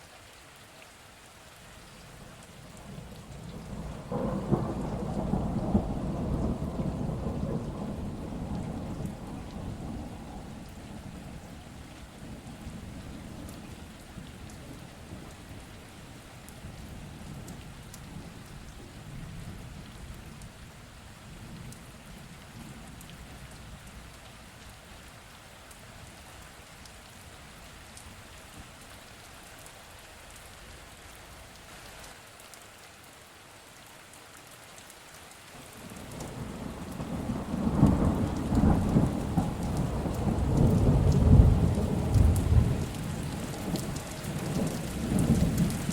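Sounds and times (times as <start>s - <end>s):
heavy rain: 0.0s - 45.9s
thunder rumbling: 2.8s - 13.6s, 35.8s - 45.9s.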